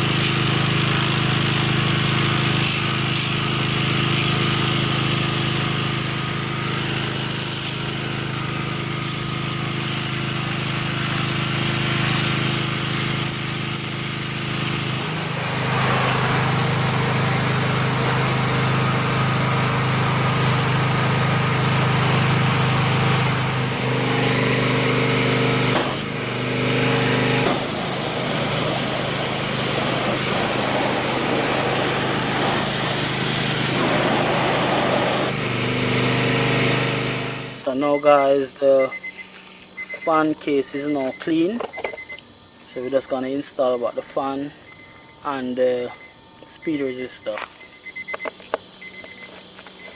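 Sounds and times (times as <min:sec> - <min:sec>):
small motor running with hiss: 0:00.0 - 0:37.6, 0:39.1 - 0:39.8.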